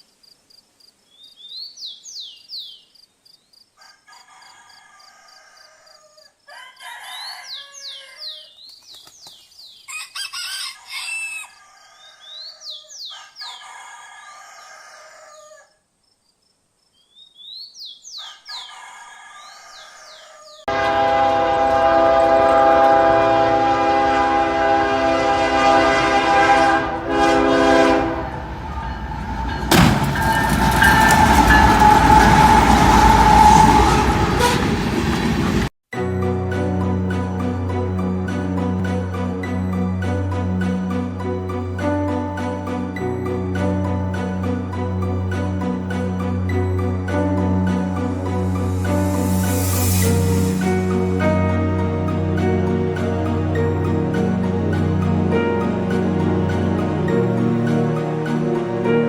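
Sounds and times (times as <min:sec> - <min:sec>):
train horn: 0:20.7 - 0:35.0, 0:47.5 - 0:57.8
train passing: 0:20.7 - 0:59.0.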